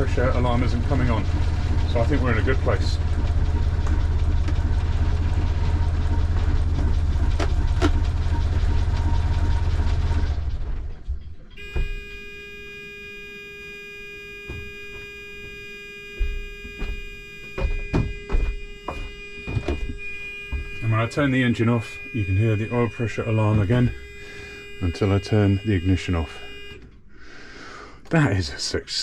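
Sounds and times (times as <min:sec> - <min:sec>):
harsh alarm buzzer: 0:00.0 - 0:06.5, 0:11.6 - 0:26.9
boat engine idling: 0:00.0 - 0:26.8.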